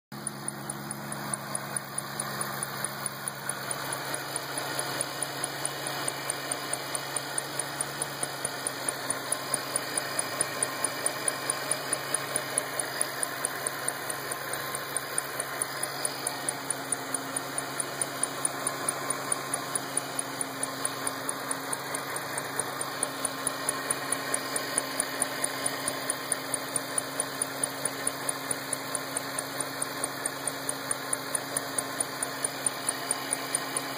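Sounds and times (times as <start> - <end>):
car engine idling: 0.1 - 33.9
sharp repeating tick: 0.2 - 33.9.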